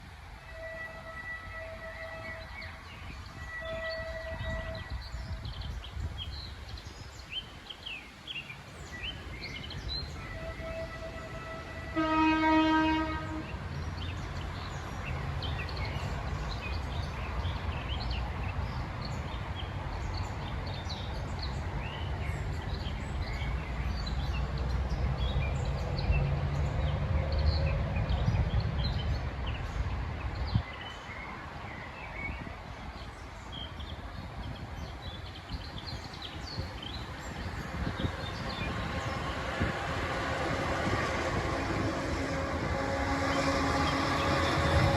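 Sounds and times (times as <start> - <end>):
train engine and wheel rumble: 0.0 - 44.9
locomotive horn blast: 0.4 - 5.6, 10.1 - 13.7, 37.1 - 44.9
birds chirping: 27.5 - 44.9.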